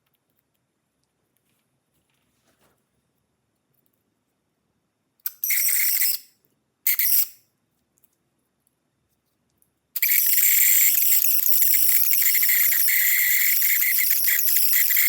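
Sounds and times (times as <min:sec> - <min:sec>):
toy motor whirring: 0:05.3 - 0:06.3, 0:06.9 - 0:07.4, 0:10.0 - 0:15.0.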